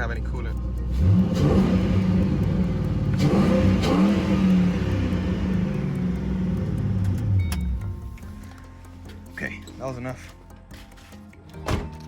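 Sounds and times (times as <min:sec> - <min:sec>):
car engine revving: 0:00.0 - 0:08.0.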